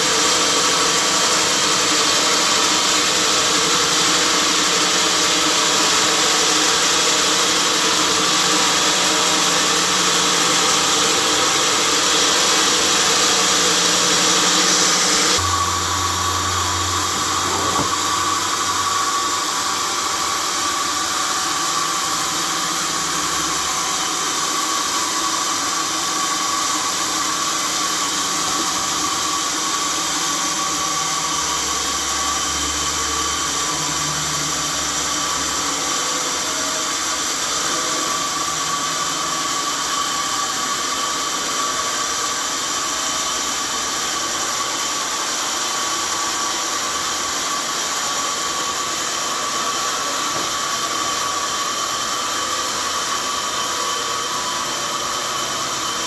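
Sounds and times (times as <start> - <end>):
sawmill machinery running: 0.0 - 56.0.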